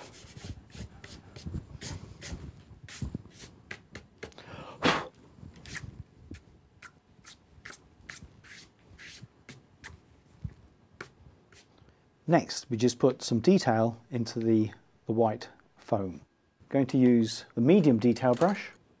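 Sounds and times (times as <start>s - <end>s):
fingertips rubbing paper: 0.0s - 4.3s, 5.6s - 10.0s.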